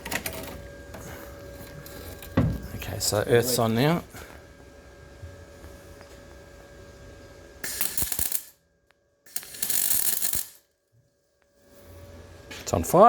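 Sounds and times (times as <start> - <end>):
electric welding crackle: 7.6 - 8.6, 9.3 - 10.8.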